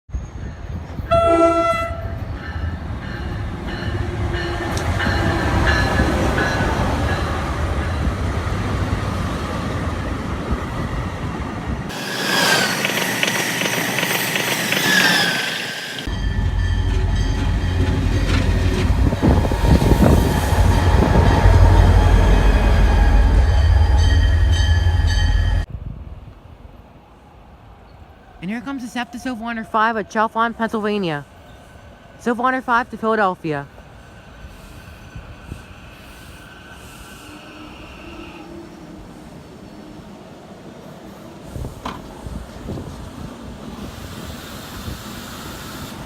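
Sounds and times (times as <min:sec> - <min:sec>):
train horn: 0:01.1 - 0:02.2, 0:37.1 - 0:39.1.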